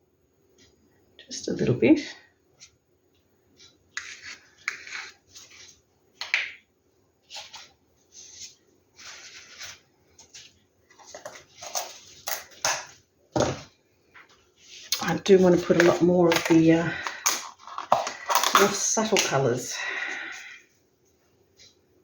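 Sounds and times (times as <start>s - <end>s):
paint cups rustling and tapping: 8.3s - 19.8s.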